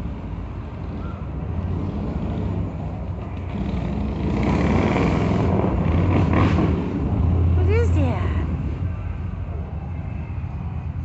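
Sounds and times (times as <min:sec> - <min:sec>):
vehicle engine rumble: 0:00.0 - 0:11.0.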